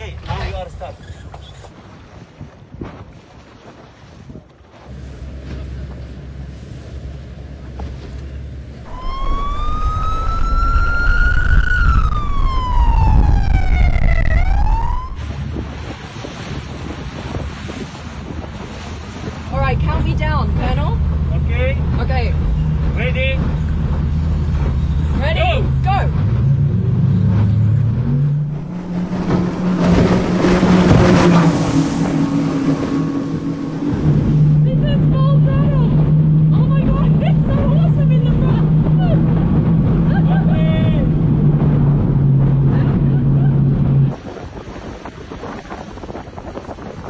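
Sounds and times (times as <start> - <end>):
motorboat engines accelerating: 4.7 - 47.0
rushing water: 4.8 - 43.1, 44.0 - 47.0
wind rumble: 8.8 - 47.0
boat siren wailing: 8.9 - 15.4, 26.4 - 44.2.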